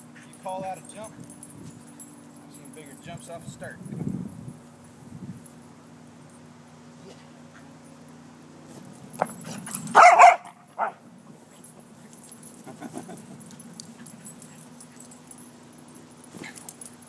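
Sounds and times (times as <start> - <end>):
dog barking: 9.9 - 11.0.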